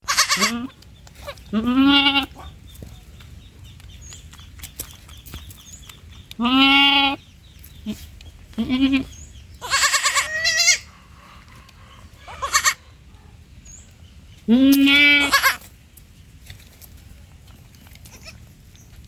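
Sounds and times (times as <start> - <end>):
young goat bleating: 0.0 - 2.4, 6.4 - 7.2, 7.8 - 10.9, 12.2 - 12.8, 14.4 - 15.7, 18.0 - 18.5.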